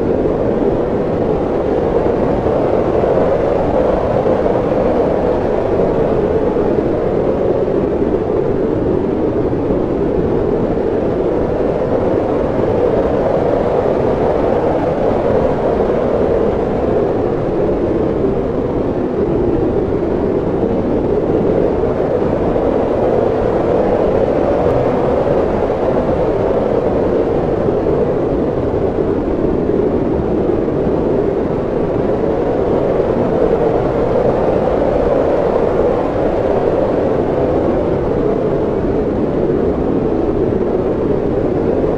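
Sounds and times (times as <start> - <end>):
strong wind rushing: 0.0 - 41.9.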